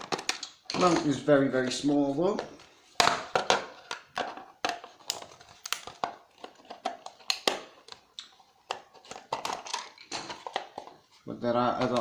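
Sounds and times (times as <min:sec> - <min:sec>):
plastic casing cracking apart: 0:05.0 - 0:10.8.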